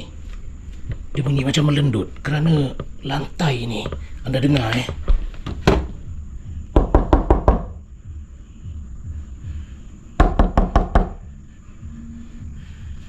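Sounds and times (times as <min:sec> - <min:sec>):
knocks on wooden boards: 0:04.9 - 0:05.9, 0:06.8 - 0:07.8, 0:10.2 - 0:11.2.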